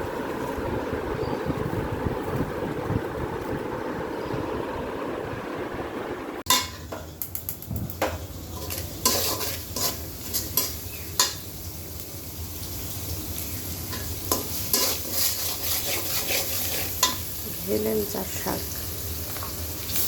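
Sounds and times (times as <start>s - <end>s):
steady noisy rush: 0.0s - 6.5s
greens sizzling in a pan: 7.1s - 20.0s
spatula scraping a pan: 8.5s - 11.4s, 13.9s - 17.4s.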